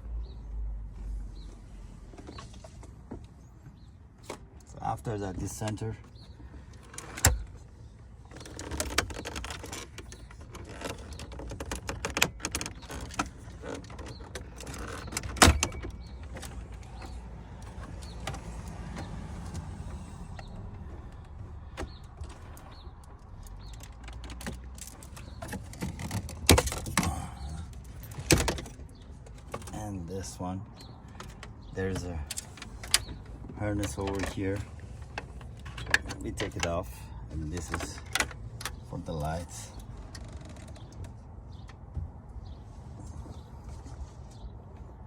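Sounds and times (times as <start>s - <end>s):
plastic clicks and rattles: 8.3s - 19.2s, 21.2s - 27.1s.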